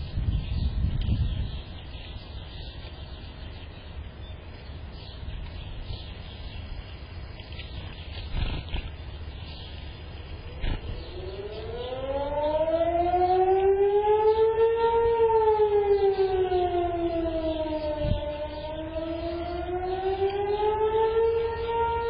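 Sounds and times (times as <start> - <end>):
steady low rumble: 0.0 - 11.6
small birds chirping: 0.0 - 22.0.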